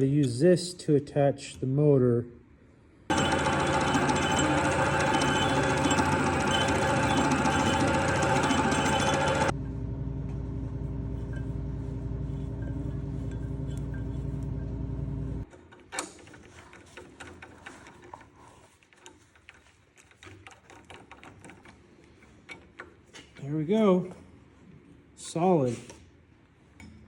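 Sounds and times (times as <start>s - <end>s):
electric drill running: 3.1s - 9.6s.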